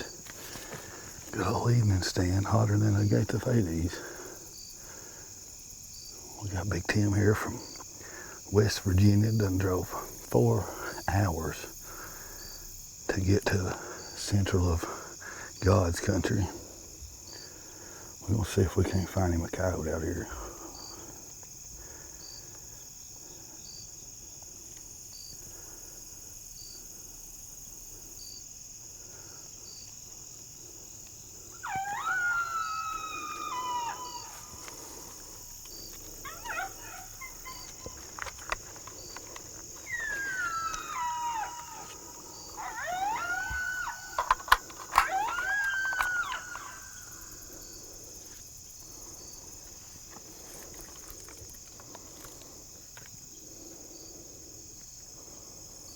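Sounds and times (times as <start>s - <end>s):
crickets chirping: 0.0s - 55.9s
coyote howls and yips: 31.5s - 47.8s
sharp clicks: 43.4s - 47.0s.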